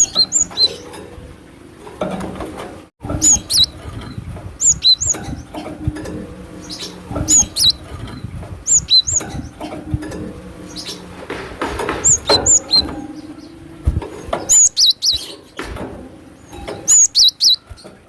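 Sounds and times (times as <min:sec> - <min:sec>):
bird calling high sharp notes: 0:04.6 - 0:05.3, 0:06.5 - 0:07.8, 0:08.6 - 0:09.4, 0:12.0 - 0:13.8, 0:14.5 - 0:15.4, 0:16.9 - 0:17.7.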